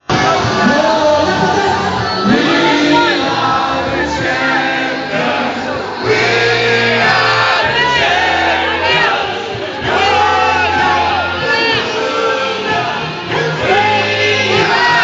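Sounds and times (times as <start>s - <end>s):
music with singing: 0.0s - 15.0s
steady bass line: 0.0s - 15.0s.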